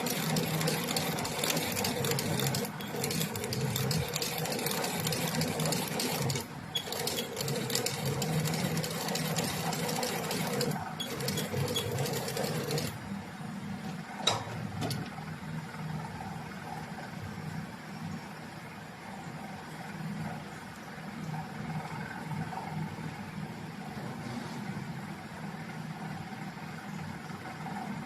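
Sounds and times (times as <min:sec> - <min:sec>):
sewing machine stitching: 0:00.0 - 0:13.0.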